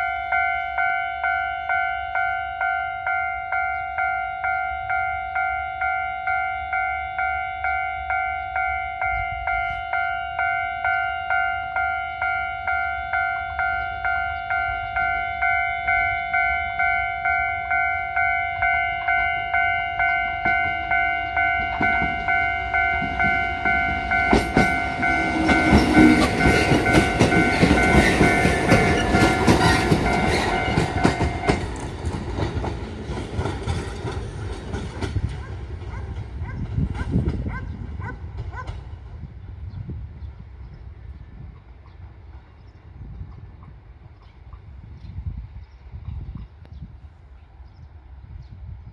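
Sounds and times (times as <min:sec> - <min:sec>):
level crossing bell ringing: 0:00.0 - 0:31.6
train rail clatter: 0:18.6 - 0:39.3.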